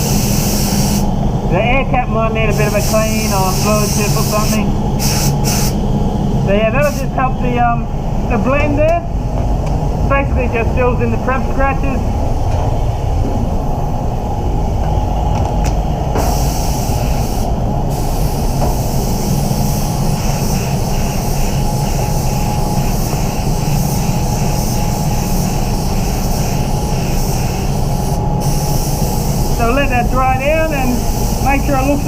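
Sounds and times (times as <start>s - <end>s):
spray gun hissing: 0.0s - 1.2s, 2.5s - 5.9s, 6.8s - 7.1s, 16.2s - 32.0s
low rumble: 5.8s - 20.3s.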